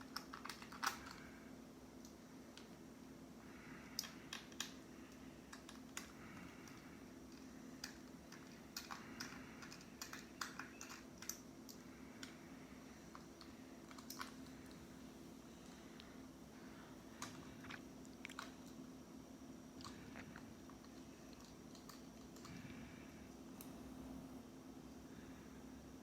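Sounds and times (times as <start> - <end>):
small clicks and taps of parts: 0.0 - 1.3, 3.9 - 12.4, 20.8 - 22.6
steady low hum: 0.0 - 26.0.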